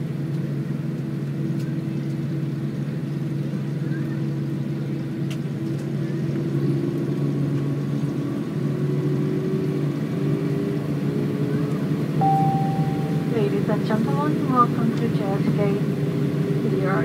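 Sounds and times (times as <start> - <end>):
sustained hum tones: 12.2 - 14.8.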